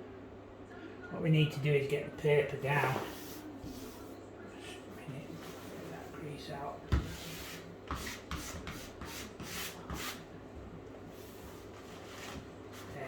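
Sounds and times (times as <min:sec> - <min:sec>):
soft rubbing on wallpaper: 0:02.6 - 0:13.0
wallpaper swishing strokes: 0:02.7 - 0:04.2, 0:05.2 - 0:06.4, 0:07.0 - 0:10.3, 0:11.0 - 0:13.0.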